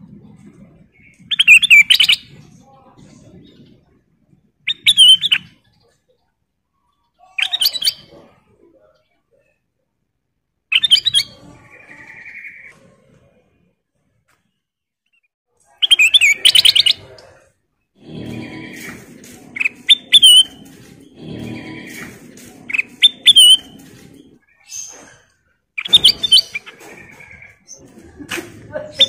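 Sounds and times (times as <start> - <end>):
bulbul chirping and whistling: 1.3 - 2.3, 4.7 - 5.5, 15.8 - 17.1, 18.7 - 23.8, 25.8 - 27.5.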